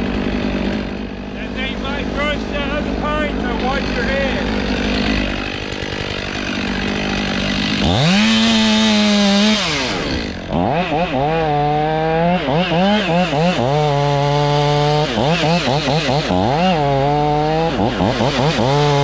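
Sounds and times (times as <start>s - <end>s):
chainsaw revving: 0.0s - 19.0s.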